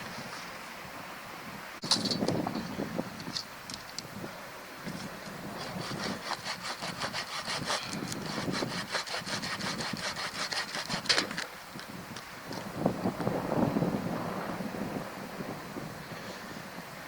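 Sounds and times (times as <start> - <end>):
hand saw cutting wood: 5.6 - 11.4.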